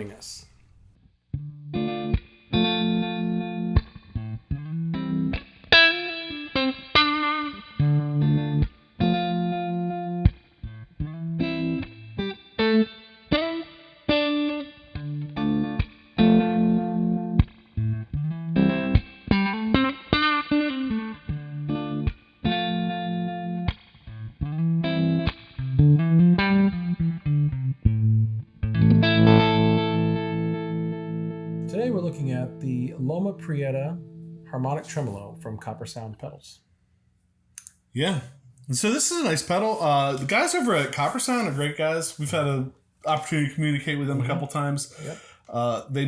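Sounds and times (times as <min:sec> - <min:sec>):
electric guitar with tremolo: 0:01.4 - 0:34.6.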